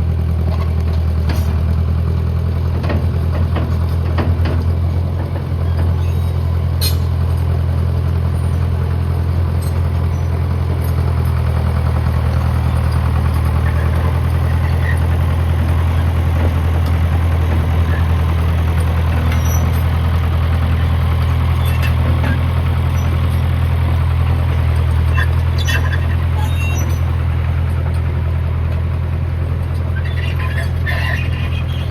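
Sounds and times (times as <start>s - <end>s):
loader engine idling: 0.0s - 31.9s.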